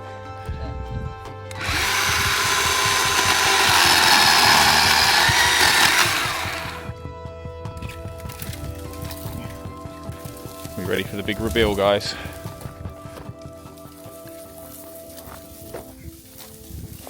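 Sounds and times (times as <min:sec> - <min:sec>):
chainsaw cutting wood: 0:01.5 - 0:06.9
elevator music: 0:01.5 - 0:06.9.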